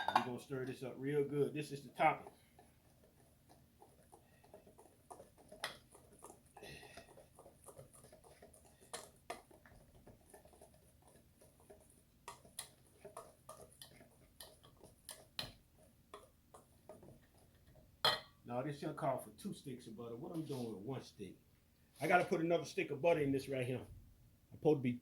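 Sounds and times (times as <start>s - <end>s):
spoon tapping mixing bowl: 0.0s - 0.4s, 3.5s - 18.4s.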